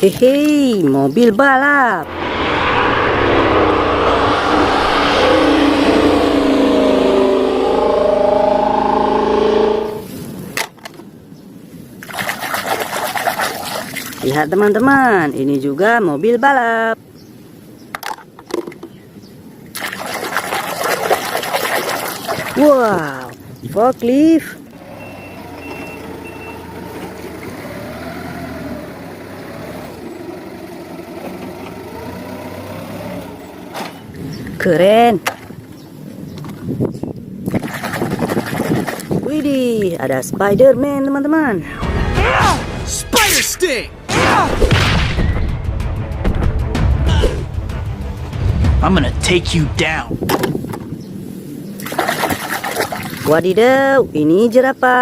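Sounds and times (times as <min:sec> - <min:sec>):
race car engine revving: 0:02.0 - 0:10.1
forklift engine running: 0:05.7 - 0:10.0, 0:24.8 - 0:33.7
reversing beeps: 0:25.0 - 0:26.7.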